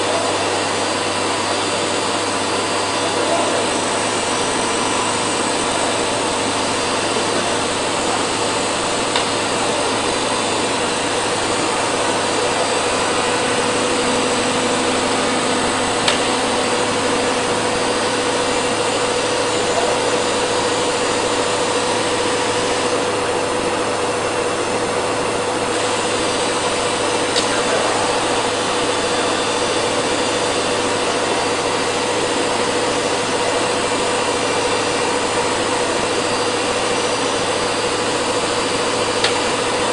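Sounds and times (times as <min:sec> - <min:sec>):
cnc router machining: 0:00.0 - 0:39.9.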